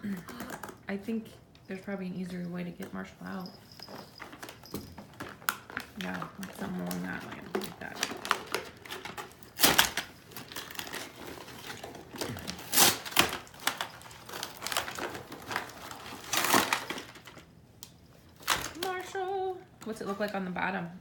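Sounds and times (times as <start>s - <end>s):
plastic packaging crinkling: 3.5s - 19.4s.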